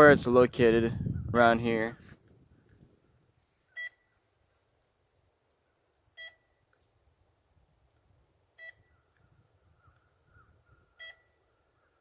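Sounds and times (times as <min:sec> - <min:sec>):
short high beeps: 0:03.7 - 0:04.1, 0:06.2 - 0:06.6, 0:08.6 - 0:08.9.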